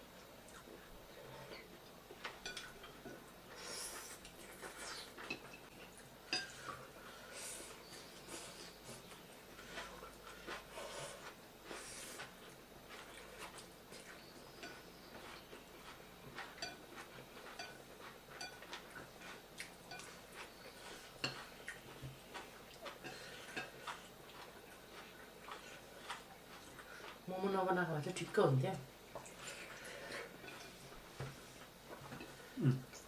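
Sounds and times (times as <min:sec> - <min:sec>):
cutlery clicking on a plate: 0:02.3 - 0:03.0
chewing and mouth noises: 0:07.7 - 0:27.3, 0:29.0 - 0:33.0.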